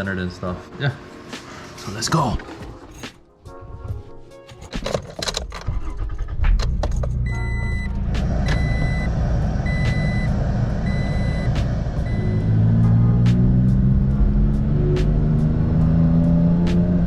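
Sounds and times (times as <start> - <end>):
car engine starting and running: 4.7 - 17.0
warning chime beeping: 7.3 - 12.6.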